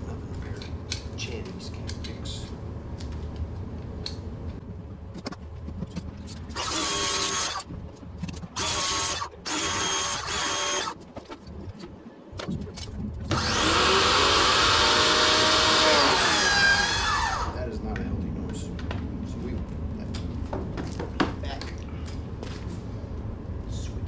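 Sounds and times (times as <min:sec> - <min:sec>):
power drill whining: 0:06.5 - 0:07.6, 0:08.6 - 0:11.0, 0:13.3 - 0:17.6.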